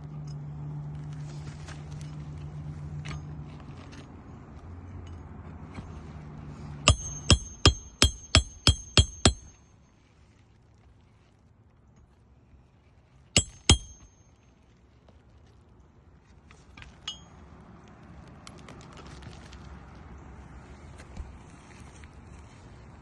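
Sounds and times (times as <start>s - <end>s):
hammer striking roofing nail: 6.9s - 9.6s, 13.4s - 14.1s.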